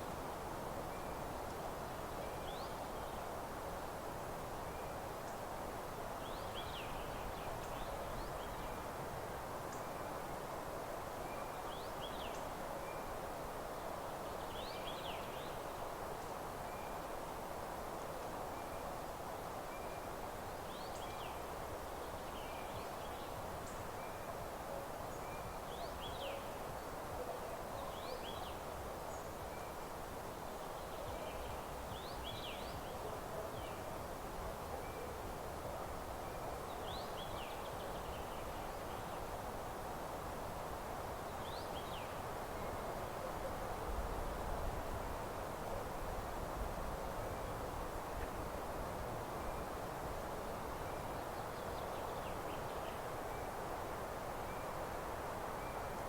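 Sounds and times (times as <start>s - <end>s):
steady rustling hiss: 0.0s - 56.0s
songbirds chirping: 30.4s - 35.2s, 49.3s - 56.0s.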